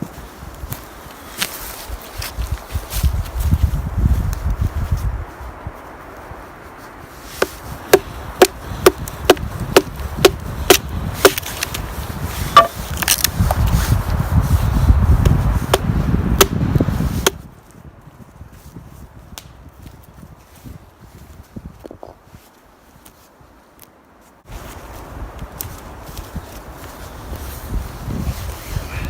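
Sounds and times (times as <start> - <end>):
wood being chopped: 7.4 - 11.9, 12.5 - 13.7, 15.2 - 16.6, 17.2 - 17.4.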